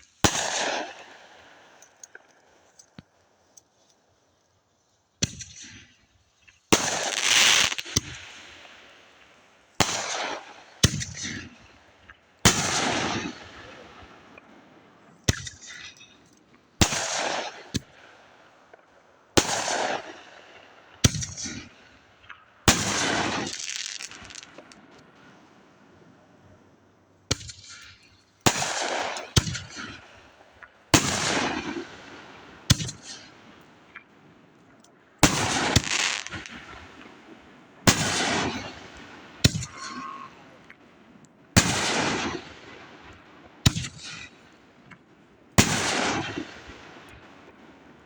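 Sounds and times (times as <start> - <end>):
fireworks banging: 6.7 - 8.8, 22.7 - 25.2, 35.2 - 37.1.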